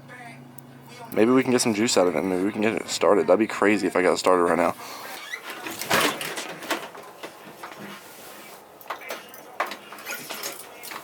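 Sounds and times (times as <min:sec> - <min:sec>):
scooter mechanical clicks and knocks: 0:08.8 - 0:11.0.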